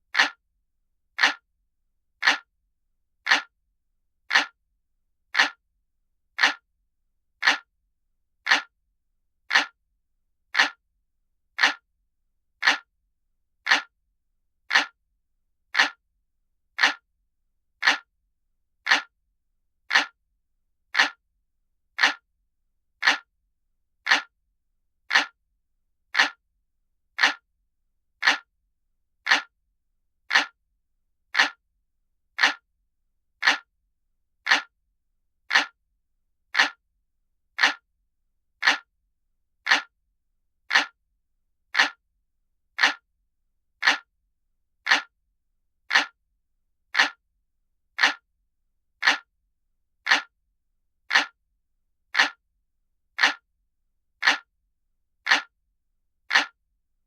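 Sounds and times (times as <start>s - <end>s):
clock ticking: 0.1s - 0.4s, 1.2s - 1.4s, 2.2s - 2.5s, 3.3s - 3.5s, 4.3s - 4.6s, 5.4s - 5.6s, 6.4s - 6.6s, 7.4s - 7.7s, 8.5s - 8.7s, 9.5s - 9.8s, 10.5s - 10.8s, 11.6s - 11.8s, 12.6s - 12.9s, 13.7s - 13.9s, 14.7s - 15.0s, 15.7s - 16.0s, 16.8s - 17.0s, 17.8s - 18.1s, 18.9s - 19.1s, 19.9s - 20.2s, 20.9s - 21.2s, 22.0s - 22.2s, 23.0s - 23.3s, 24.0s - 24.3s, 25.1s - 25.4s, 26.1s - 26.4s, 27.2s - 27.4s, 28.2s - 28.5s, 29.3s - 29.5s, 30.3s - 30.6s, 31.3s - 31.6s, 32.4s - 32.6s, 33.4s - 33.7s, 34.4s - 34.7s, 35.5s - 35.8s, 36.5s - 36.8s, 37.6s - 37.8s, 38.6s - 38.9s, 39.6s - 39.9s, 40.7s - 41.0s, 41.7s - 42.0s, 42.8s - 43.0s, 43.8s - 44.1s, 44.8s - 45.1s, 45.9s - 46.2s, 46.9s - 47.2s, 48.0s - 48.2s, 49.0s - 49.3s, 50.0s - 50.3s, 51.1s - 51.4s, 52.1s - 52.4s, 53.2s - 53.4s, 54.2s - 54.5s, 55.2s - 55.5s, 56.3s - 56.6s.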